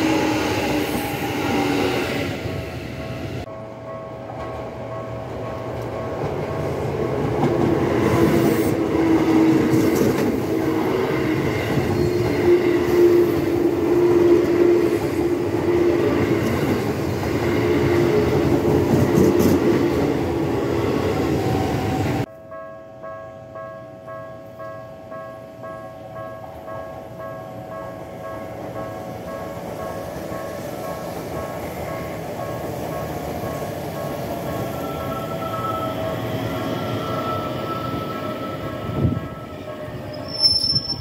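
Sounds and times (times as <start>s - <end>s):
train whine: 0.0s - 22.3s, 27.6s - 41.0s.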